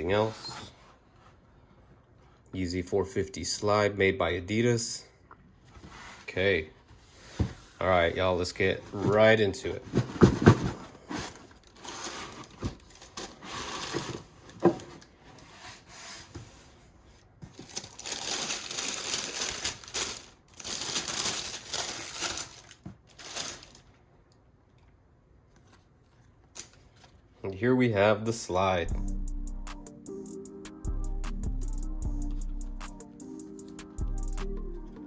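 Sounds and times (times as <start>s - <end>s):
wrapping crinkling and rustling: 7.8s - 15.2s, 17.4s - 24.1s.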